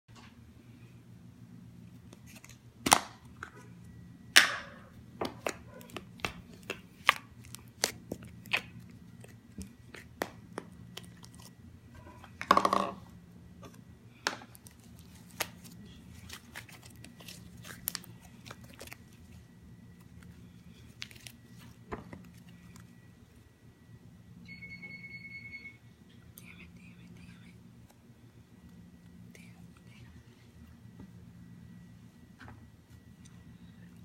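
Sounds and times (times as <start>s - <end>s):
electronic beep: 24.4s - 25.8s.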